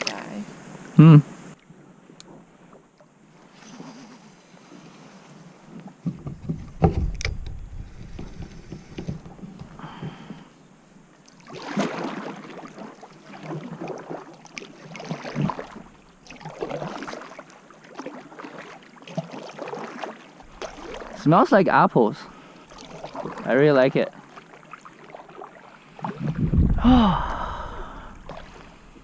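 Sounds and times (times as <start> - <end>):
paddle strokes splashing in water: 11.1 - 26.6, 28.2 - 29.0.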